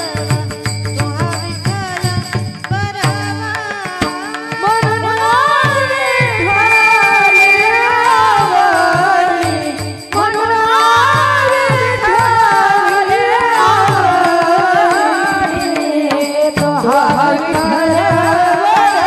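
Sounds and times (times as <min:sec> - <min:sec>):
woman singing ornamented line: 0:04.6 - 0:19.0
steady drone: 0:05.8 - 0:10.2.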